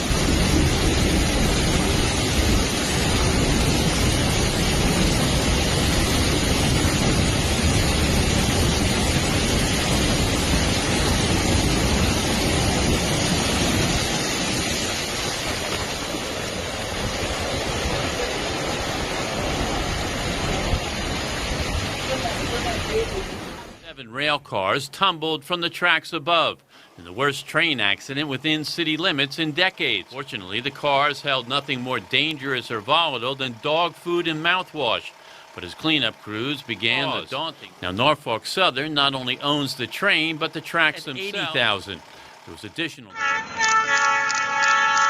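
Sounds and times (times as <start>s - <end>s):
deep rumble: 0.0s - 24.0s
rushing floodwater and rain: 0.0s - 24.4s, 26.8s - 42.5s.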